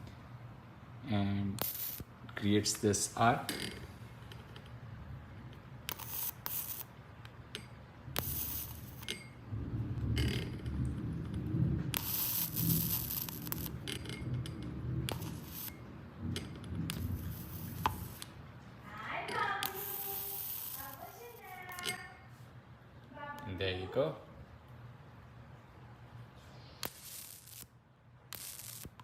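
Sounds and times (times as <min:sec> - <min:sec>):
electric arc hissing crackle: 0:01.3 - 0:04.0, 0:05.8 - 0:07.4, 0:08.0 - 0:22.3, 0:26.3 - 0:29.0.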